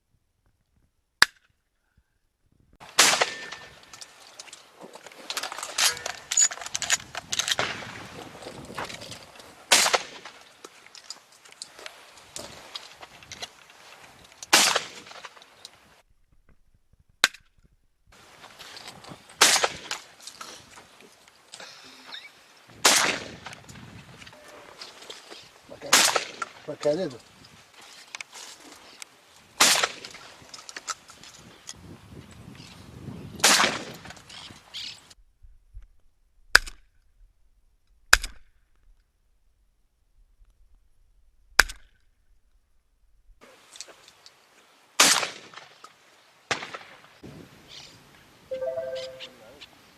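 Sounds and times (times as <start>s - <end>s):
gunshots: 2.9s - 3.8s, 9.7s - 10.4s, 14.5s - 15.1s, 22.8s - 23.4s, 25.9s - 26.4s.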